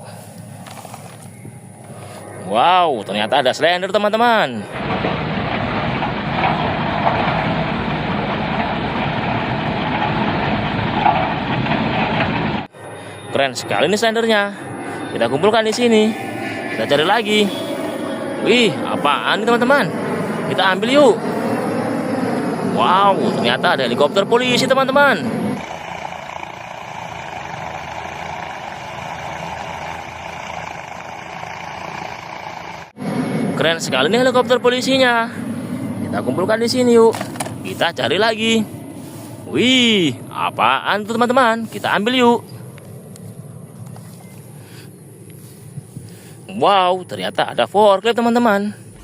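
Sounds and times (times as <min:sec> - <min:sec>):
road roller engine running: 0:00.0 - 0:46.5.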